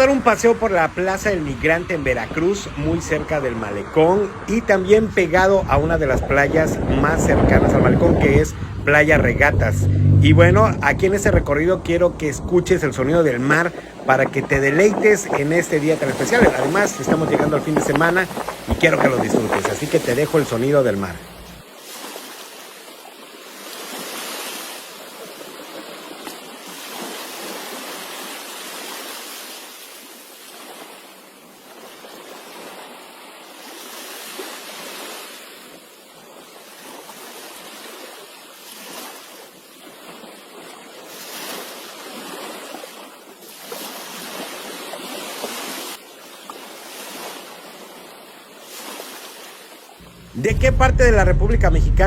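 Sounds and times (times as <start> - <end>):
surf breaking on beach: 0.0 - 35.8, 46.8 - 52.0.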